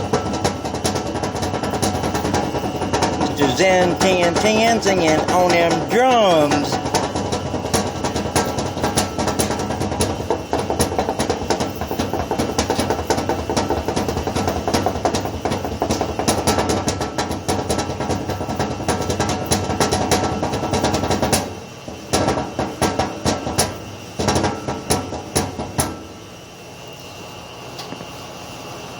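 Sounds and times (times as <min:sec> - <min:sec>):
fingers drumming on metal casing: 0:00.0 - 0:15.2.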